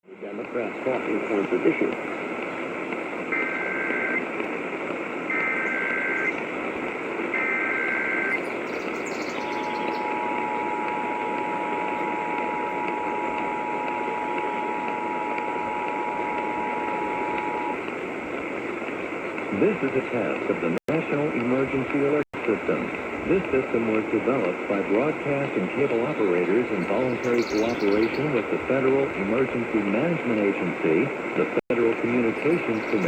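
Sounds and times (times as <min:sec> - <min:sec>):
radio signal hiss: 0:00.0 - 0:33.0
data screech bursts: 0:03.3 - 0:04.2, 0:05.3 - 0:06.4, 0:07.3 - 0:17.8, 0:26.9 - 0:28.4
two-tone attention signal: 0:03.3 - 0:04.2, 0:05.3 - 0:06.4, 0:07.3 - 0:08.5, 0:09.4 - 0:17.8.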